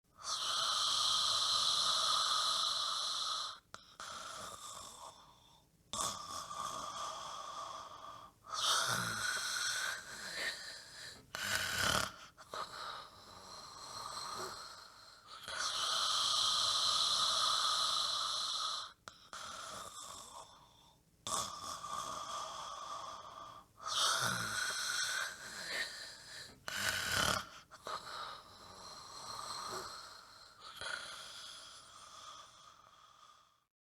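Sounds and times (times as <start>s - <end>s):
dog snoring: 6.0s - 20.6s, 21.2s - 33.5s.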